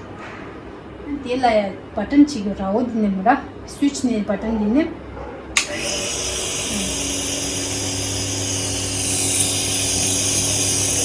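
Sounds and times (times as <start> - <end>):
air compressor humming: 5.6 - 11.0
compressor switch click: 5.6 - 11.0
hiss of air: 5.6 - 11.0.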